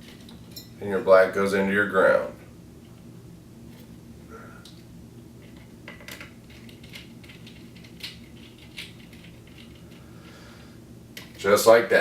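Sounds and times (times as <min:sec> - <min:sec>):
steady low hum: 0:00.0 - 0:12.0
wire clicking and scraping: 0:05.4 - 0:10.1.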